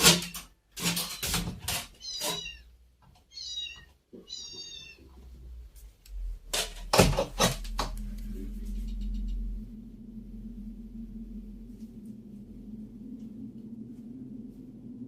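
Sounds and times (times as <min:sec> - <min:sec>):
cat meowing: 0:02.0 - 0:02.7, 0:03.3 - 0:05.1.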